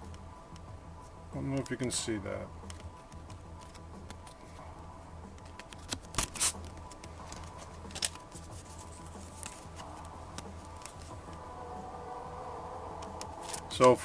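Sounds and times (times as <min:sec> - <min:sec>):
low steady hum: 0:00.0 - 0:14.0
handling clicks and rustles: 0:01.4 - 0:04.7, 0:05.3 - 0:11.4, 0:13.0 - 0:14.0.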